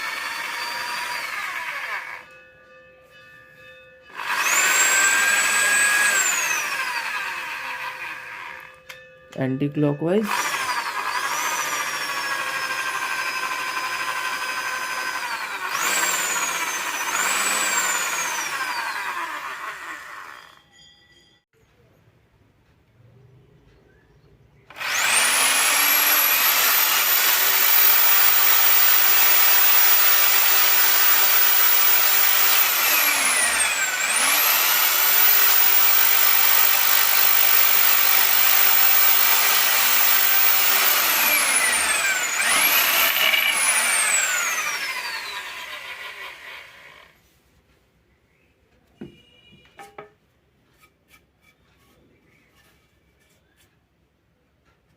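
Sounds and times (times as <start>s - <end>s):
electric drill motor whining: 0.0s - 2.4s, 4.1s - 8.8s, 10.2s - 20.6s, 24.7s - 47.2s.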